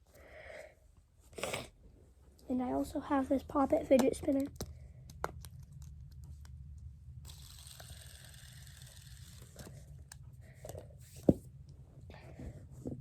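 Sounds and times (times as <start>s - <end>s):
fidget spinner whirring: 7.2s - 11.3s.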